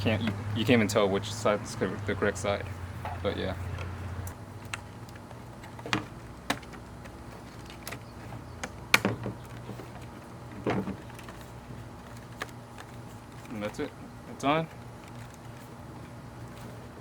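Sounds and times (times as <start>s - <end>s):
hard plastic clicks and knocks: 8.6s - 9.8s.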